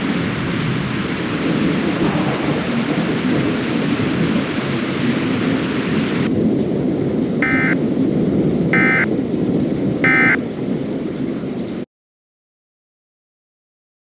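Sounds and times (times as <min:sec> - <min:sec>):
rain: 0:00.0 - 0:11.9
rumbling thunder: 0:00.0 - 0:11.9
warbling data tone bursts: 0:07.4 - 0:07.8, 0:08.8 - 0:09.1, 0:10.0 - 0:10.4.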